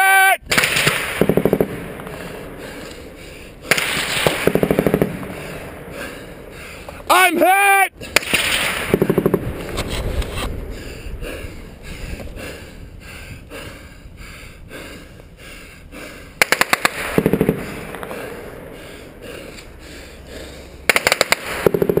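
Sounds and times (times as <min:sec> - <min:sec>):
faint gunshots: 0:00.5 - 0:02.2, 0:03.6 - 0:05.4, 0:08.1 - 0:09.4, 0:16.4 - 0:18.1, 0:20.9 - 0:22.0
automatic gunfire bursts: 0:16.4 - 0:17.6, 0:20.9 - 0:22.0.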